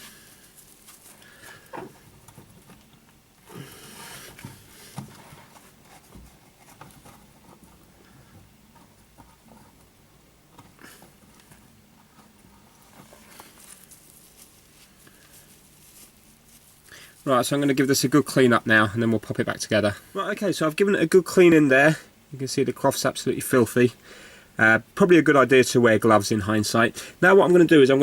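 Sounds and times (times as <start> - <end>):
wet rubbing and scraping: 10.8 - 17.4.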